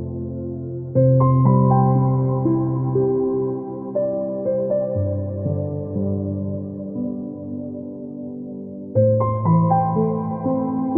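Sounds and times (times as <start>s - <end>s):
slow soft piano music: 0.0s - 10.9s.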